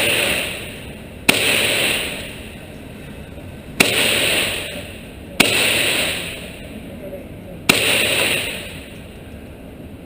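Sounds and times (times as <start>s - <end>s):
handgun shots with echo: 0.0s - 0.7s, 1.3s - 2.4s, 3.8s - 6.5s, 7.7s - 8.9s.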